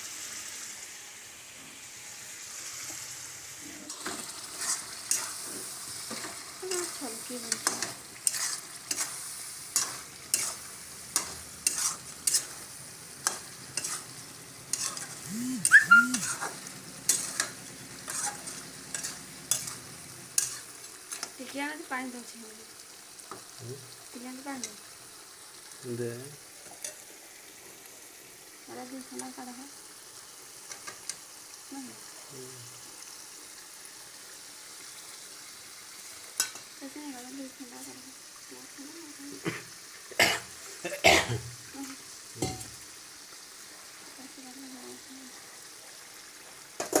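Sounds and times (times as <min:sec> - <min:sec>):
curry sizzling in a pan: 0:00.0 - 0:47.0
spatula scraping a pan: 0:03.8 - 0:15.3, 0:16.2 - 0:21.4
short two-part call: 0:15.3 - 0:16.4.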